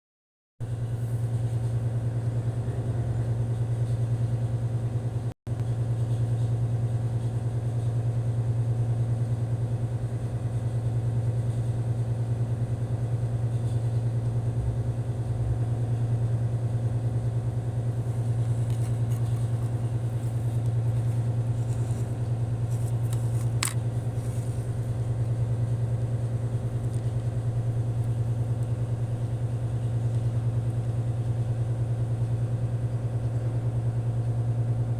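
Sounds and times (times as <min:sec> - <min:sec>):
low mechanical drone: 0:00.7 - 0:06.4, 0:13.0 - 0:34.9.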